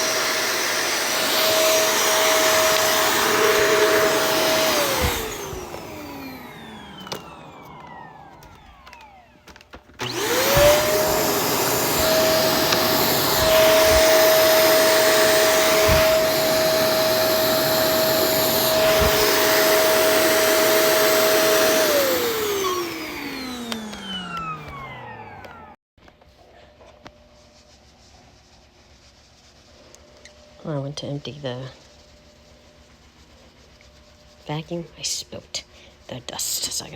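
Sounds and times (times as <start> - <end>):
vacuum cleaner motor whine: 0.0 - 25.8.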